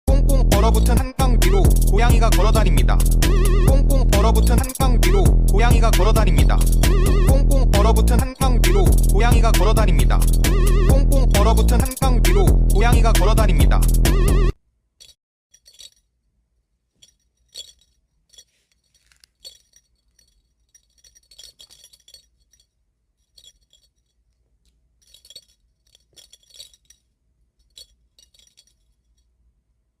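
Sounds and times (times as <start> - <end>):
faint light clinking: 15.0 - 29.4.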